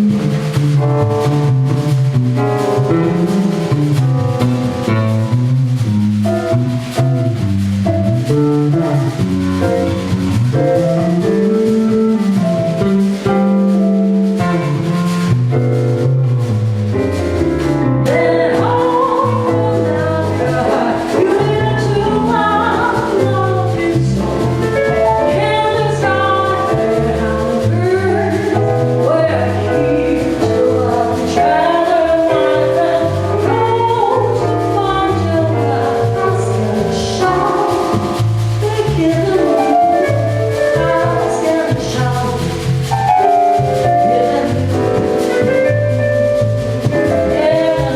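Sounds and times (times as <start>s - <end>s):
jazz band playing: 0.0s - 47.9s
person singing: 43.8s - 45.0s.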